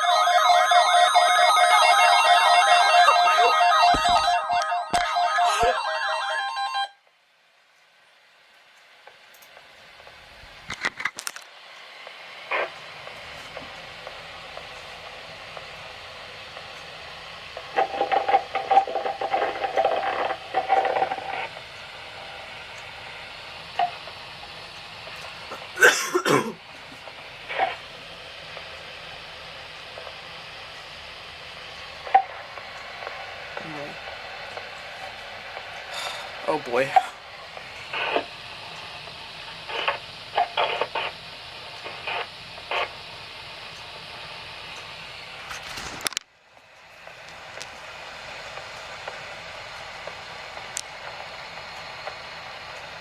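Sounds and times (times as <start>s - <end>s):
choppy broadcast voice: 3.0s - 6.3s, 36.3s - 37.2s
radio static hiss: 9.1s - 46.2s.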